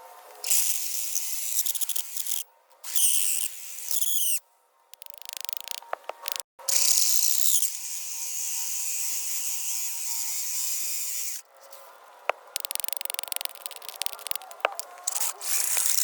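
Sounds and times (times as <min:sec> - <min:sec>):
rapid clicks: 0:12.5 - 0:16.0
power drill boring into concrete: 0:15.1 - 0:16.0.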